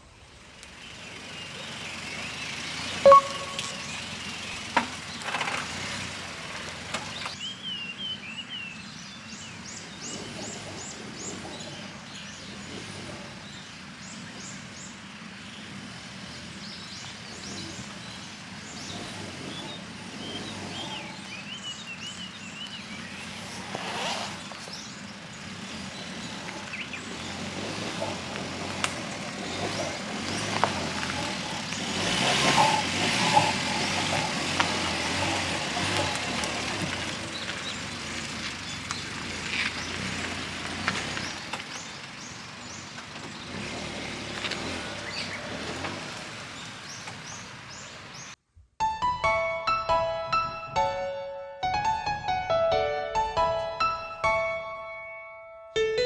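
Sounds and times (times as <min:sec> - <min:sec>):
steady broad outdoor noise: 0:00.0 - 0:48.4
bird chirps: 0:01.4 - 0:05.3.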